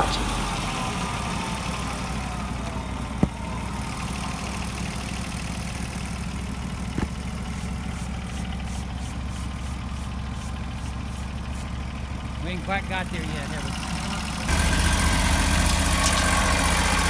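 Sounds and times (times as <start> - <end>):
engine idling: 0.0 - 17.0
sharp knocks: 6.9 - 7.4.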